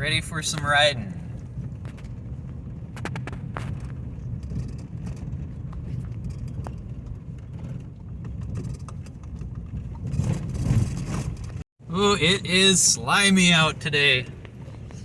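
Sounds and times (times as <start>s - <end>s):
truck engine rumble: 0.0s - 15.0s
knocks and rattles: 1.8s - 11.6s.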